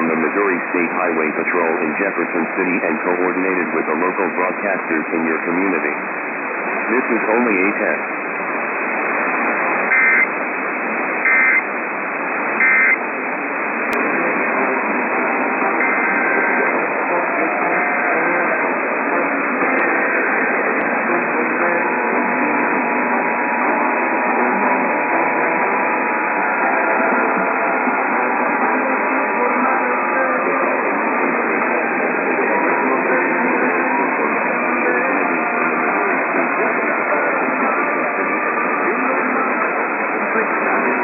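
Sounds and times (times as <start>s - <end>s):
faint radio program audio: 0.0s - 41.0s
radio static: 0.0s - 41.0s
digital data bursts: 11.2s - 11.6s, 12.6s - 13.0s.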